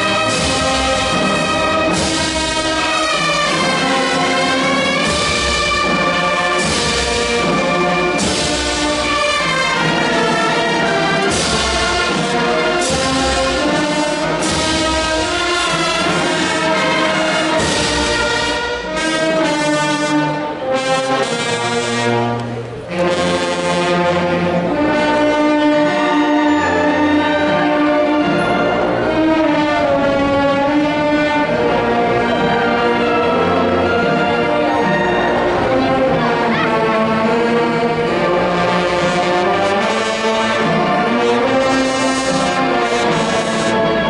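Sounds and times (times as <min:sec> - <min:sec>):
drum strokes: 0:00.0 - 0:19.5
brass chords: 0:00.0 - 0:44.0.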